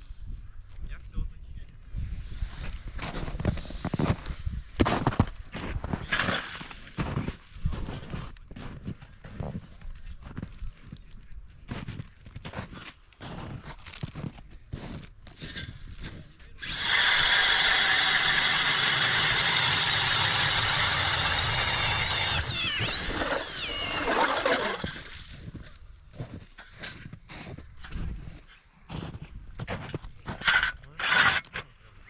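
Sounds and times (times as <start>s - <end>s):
power drill whining: 16.6s - 25.4s.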